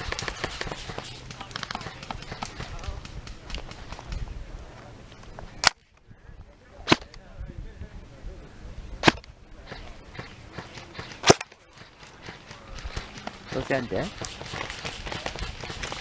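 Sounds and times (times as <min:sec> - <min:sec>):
airsoft gun shots: 0:06.9 - 0:07.1, 0:09.0 - 0:11.5, 0:12.8 - 0:16.0.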